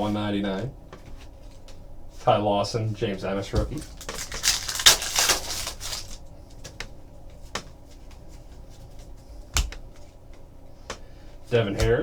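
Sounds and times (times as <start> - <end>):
trading cards rustling: 3.6 - 6.8.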